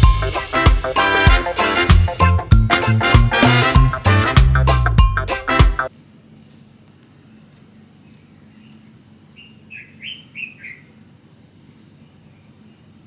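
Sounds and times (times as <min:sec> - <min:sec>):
bird chirping: 0:08.0 - 0:13.0.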